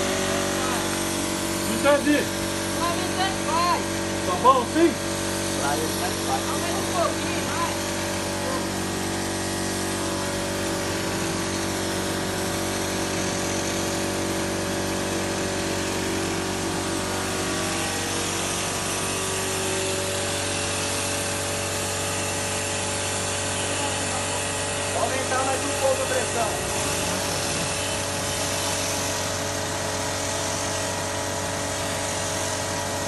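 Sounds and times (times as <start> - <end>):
pump motor humming: 0.0 - 33.0
compressed air hissing: 19.9 - 32.7.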